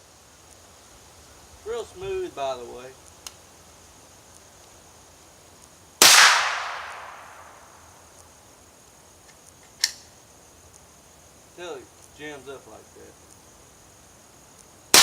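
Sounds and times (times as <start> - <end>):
quiet sharp click: 3.2 - 3.4
rifle shot with echo: 6.0 - 7.7.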